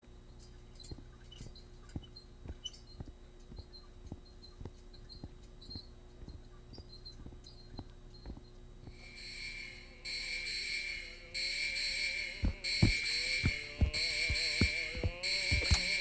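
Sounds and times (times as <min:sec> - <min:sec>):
electrical hum: 0:00.0 - 0:16.0
high squeaky chirps: 0:00.3 - 0:16.0
soft low thuds: 0:12.4 - 0:16.0.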